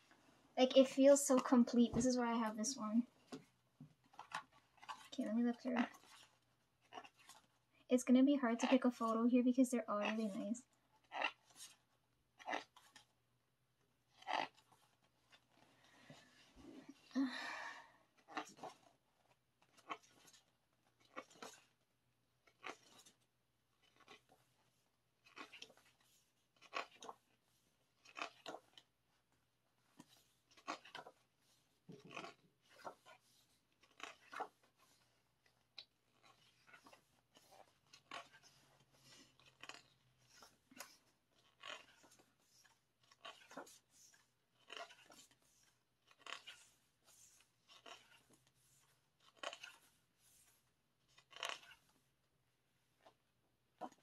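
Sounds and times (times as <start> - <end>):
pages being turned: 3.2 - 7.6, 11.1 - 13.1, 14.1 - 16.6, 18.2 - 21.8, 22.4 - 52.1.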